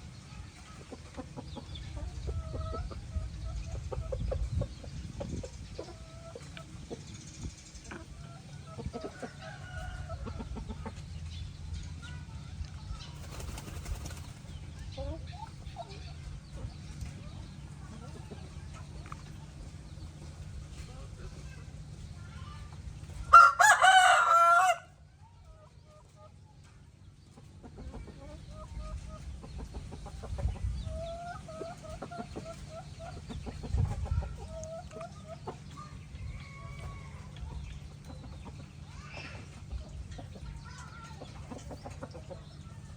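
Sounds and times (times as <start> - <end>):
chicken clucking: 0.3 - 12.2, 13.2 - 21.6, 25.2 - 42.9
rooster crowing: 23.3 - 24.9.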